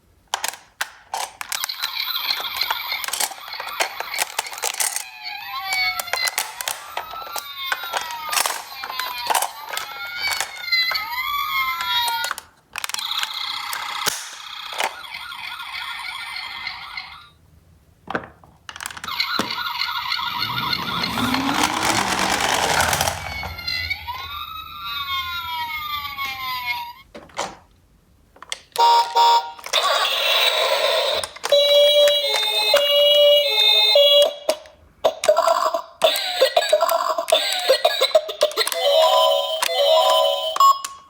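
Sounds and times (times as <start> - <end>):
toy ambulance electronic sirens: 1.5 - 17.2, 28.7 - 41.0.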